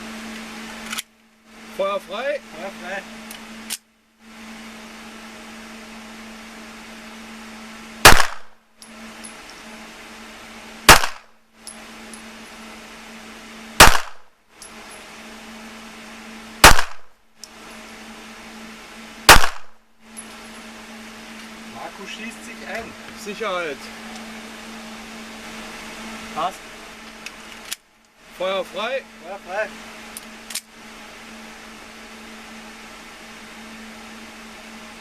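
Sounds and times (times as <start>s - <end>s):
handgun shots: 8.1s - 8.6s, 10.9s - 11.3s, 13.8s - 14.3s, 16.6s - 17.1s, 19.3s - 19.8s.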